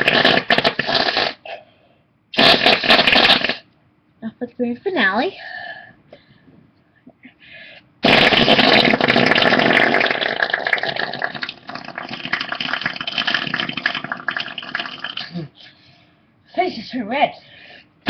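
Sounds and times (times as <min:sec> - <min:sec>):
wet sputtering fart: 0:00.0 - 0:01.4, 0:02.3 - 0:03.7, 0:08.0 - 0:15.5.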